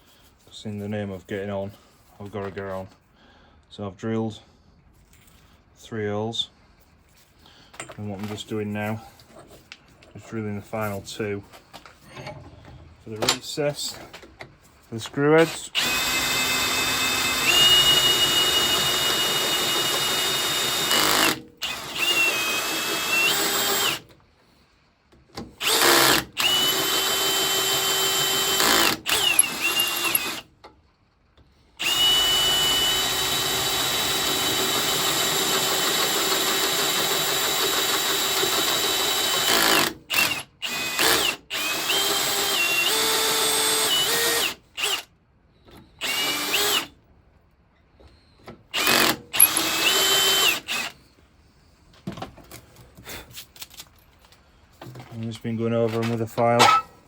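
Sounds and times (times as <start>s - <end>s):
electric drill whining: 15.5s - 24.1s, 25.6s - 30.5s, 31.8s - 45.1s, 46.0s - 46.9s, 48.7s - 51.1s.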